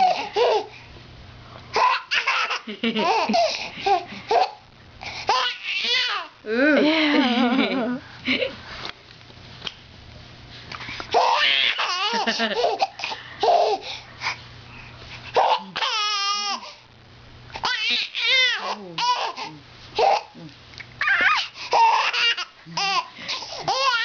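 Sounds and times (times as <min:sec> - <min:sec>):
baby laughing and squealing: 0:00.0 - 0:00.7, 0:01.8 - 0:04.6, 0:11.1 - 0:13.8, 0:15.4 - 0:16.7, 0:21.0 - 0:24.0.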